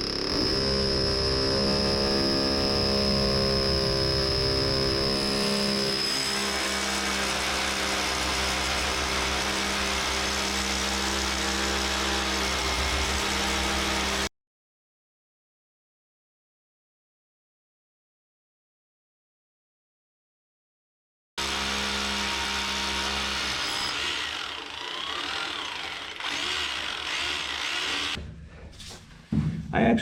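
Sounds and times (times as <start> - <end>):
electric drill boring into concrete: 0.0 - 14.3, 21.4 - 28.2.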